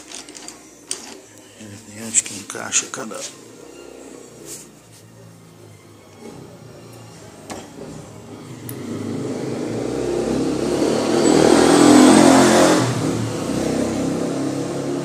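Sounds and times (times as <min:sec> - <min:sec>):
small engine running and revving: 0:07.8 - 0:15.0.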